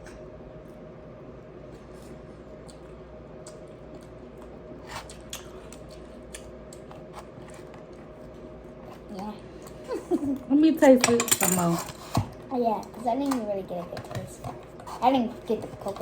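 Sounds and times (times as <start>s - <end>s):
background hum: 0.0s - 16.0s
chewing: 1.8s - 9.0s.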